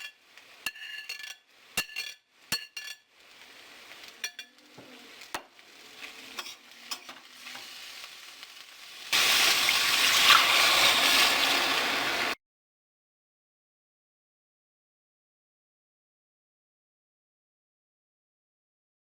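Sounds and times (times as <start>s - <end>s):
food sizzling in hot oil: 0.0s - 12.4s.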